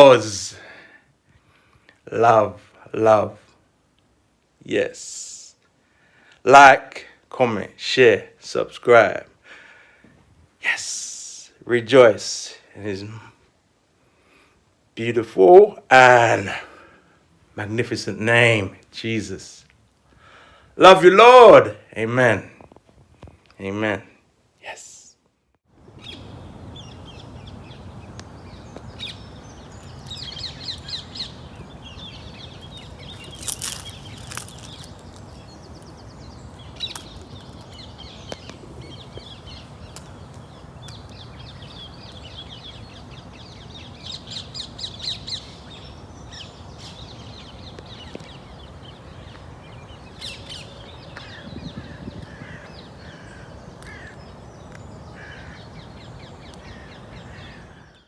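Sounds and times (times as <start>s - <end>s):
background hiss: 0.0s - 21.1s, 24.0s - 25.3s, 28.2s - 43.6s.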